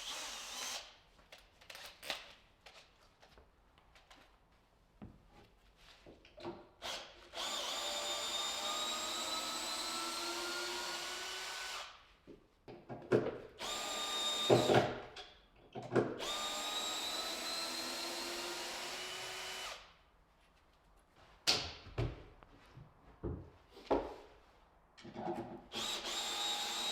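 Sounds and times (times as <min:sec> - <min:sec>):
electric drill running: 0:07.3 - 0:11.9, 0:13.6 - 0:14.8, 0:16.2 - 0:19.8, 0:25.7 - 0:26.9.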